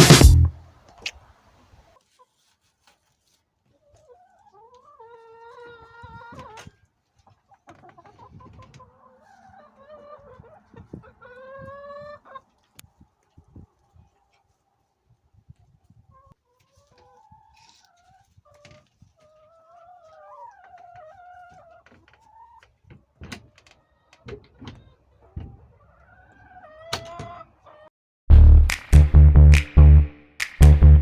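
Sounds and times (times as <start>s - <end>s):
faint chicken clucks: 0.8s - 27.9s
chicken drawn-out calls: 3.7s - 14.9s, 15.6s - 27.9s.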